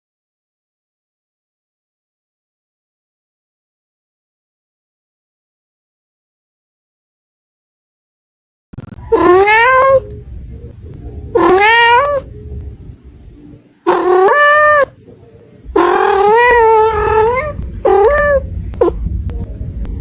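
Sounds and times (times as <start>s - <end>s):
cat meowing loudly: 9.1s - 10.0s, 11.4s - 12.3s, 13.9s - 15.0s, 15.8s - 19.0s.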